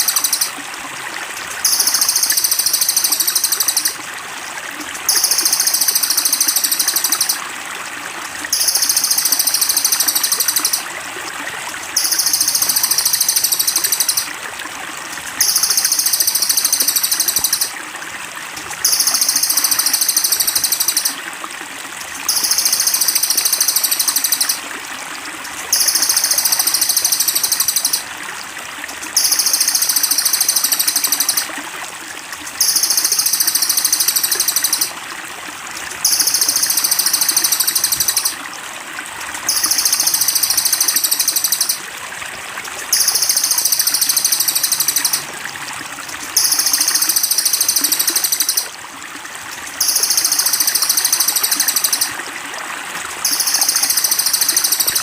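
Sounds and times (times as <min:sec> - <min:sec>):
songbird pulsing trill: 0:00.0 - 0:00.5, 0:01.6 - 0:04.0, 0:05.1 - 0:07.4, 0:08.5 - 0:10.8, 0:12.0 - 0:14.3, 0:15.4 - 0:17.7, 0:18.8 - 0:21.2, 0:22.3 - 0:24.6, 0:25.7 - 0:28.1, 0:29.2 - 0:31.5, 0:32.6 - 0:34.9, 0:36.0 - 0:38.4, 0:39.5 - 0:41.8, 0:43.0 - 0:45.2, 0:46.4 - 0:48.8, 0:49.8 - 0:52.2, 0:53.3 - 0:55.0
running water trickling: 0:00.0 - 0:55.0.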